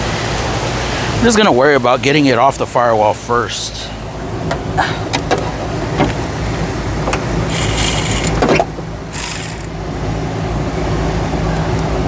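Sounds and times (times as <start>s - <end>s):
steady low hum: 2.6s - 12.0s
power ratchet bursts: 7.5s - 8.5s, 9.1s - 9.7s.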